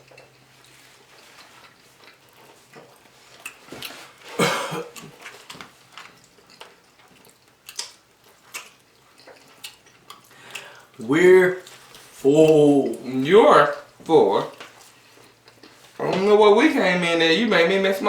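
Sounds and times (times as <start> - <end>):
chewing: 0.0 - 16.2
lip smacks: 7.2 - 11.0.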